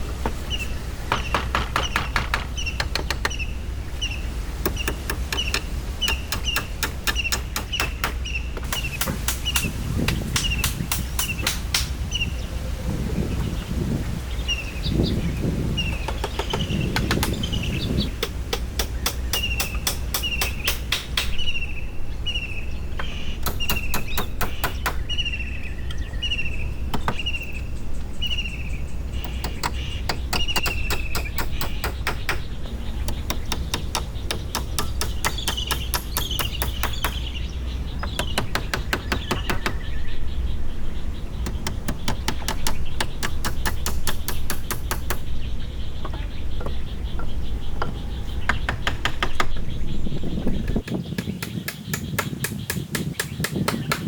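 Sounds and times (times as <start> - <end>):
songbird chirping: 0.0 - 54.0
steady low rumble: 3.4 - 51.2
rapid clicking or tapping: 29.2 - 32.5, 33.1 - 37.3, 41.4 - 45.3.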